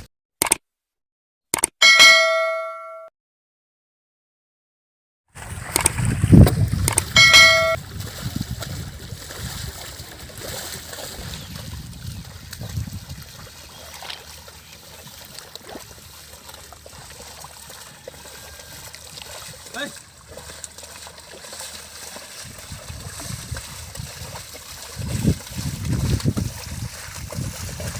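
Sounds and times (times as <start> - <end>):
bell ringing: 1.8 - 3.1, 7.1 - 7.8
mud and water splashing: 5.3 - 27.9.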